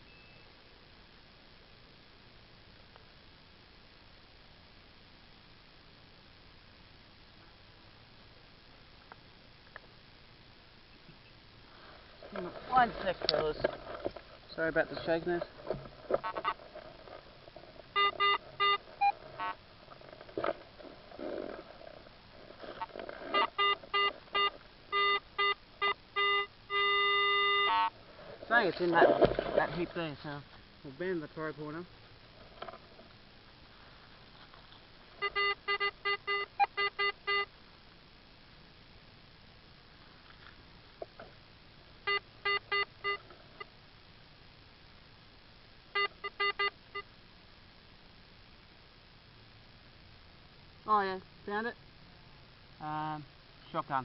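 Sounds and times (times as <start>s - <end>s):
pinpointer probe beeping: 0.0s - 0.5s, 15.8s - 16.6s, 17.9s - 19.6s, 22.8s - 27.9s, 35.2s - 37.5s, 42.1s - 43.2s, 46.0s - 47.1s
soil rustling: 11.0s - 25.5s, 26.2s - 31.0s, 31.9s - 35.5s.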